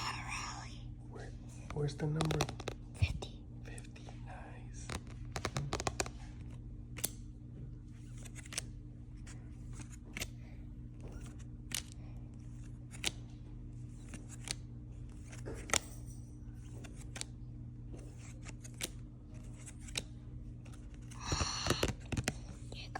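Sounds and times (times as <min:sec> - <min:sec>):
steady low hum: 0:00.0 - 0:22.9
trading cards snapping: 0:02.1 - 0:02.9, 0:04.8 - 0:07.3, 0:08.0 - 0:10.4, 0:11.0 - 0:15.9, 0:16.6 - 0:17.4, 0:18.0 - 0:22.7.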